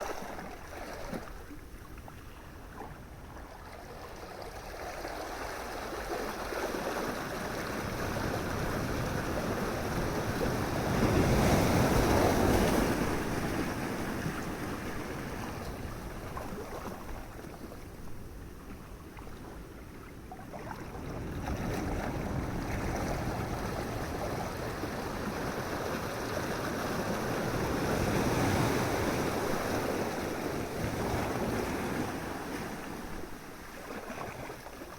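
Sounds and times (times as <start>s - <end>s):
ocean waves breaking: 5.5s - 17.8s, 20.6s - 34.9s.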